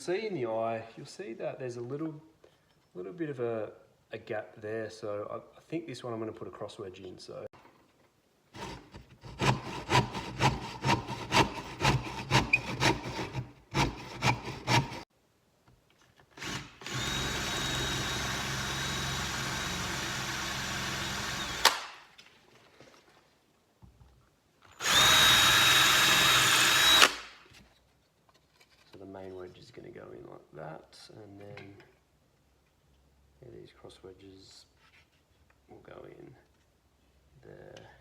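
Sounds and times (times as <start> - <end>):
hand saw cutting wood: 8.5 - 15.1, 24.8 - 27.3
power tool whining: 16.4 - 21.9, 24.8 - 27.3.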